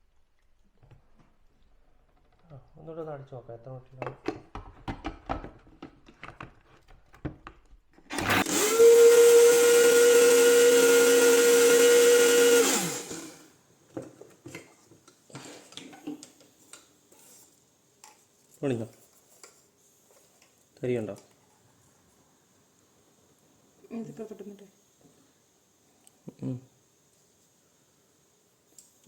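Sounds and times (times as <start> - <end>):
grinder motor whine: 8.1 - 13.4.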